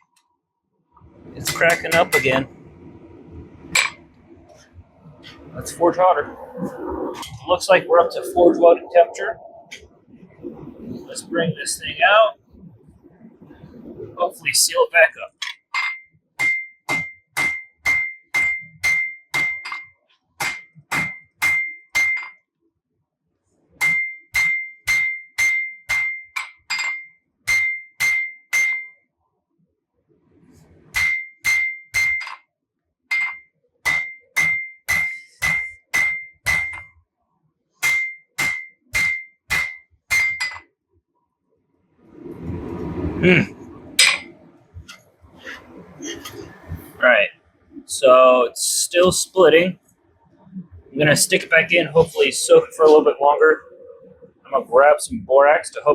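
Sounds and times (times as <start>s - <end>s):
hammer striking metal on anvil: 15.5s - 19.8s, 20.4s - 22.3s, 23.8s - 28.9s, 30.9s - 32.4s, 33.1s - 36.9s, 37.8s - 40.6s, 44.0s - 44.3s.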